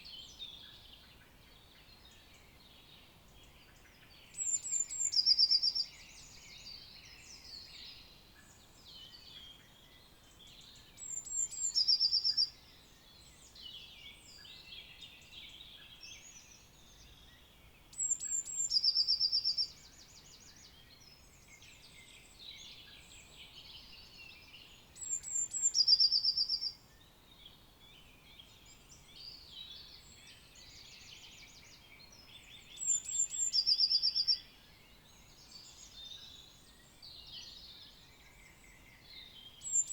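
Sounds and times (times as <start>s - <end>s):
songbirds chorus: 0.0s - 39.9s
bird song with fast trill: 18.0s - 26.8s, 28.3s - 39.9s.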